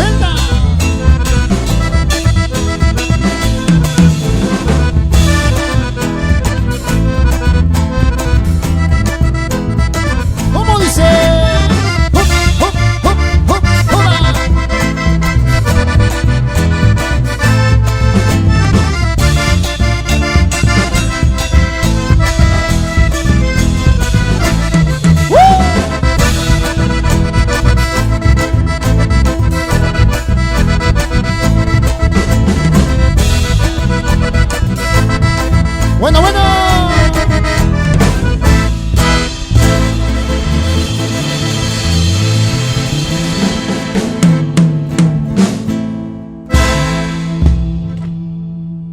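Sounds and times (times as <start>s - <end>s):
person shouting calls: 0.0s - 0.8s, 10.5s - 14.6s, 25.2s - 26.2s, 36.0s - 37.6s
accordion guitar and bass music: 0.0s - 48.9s.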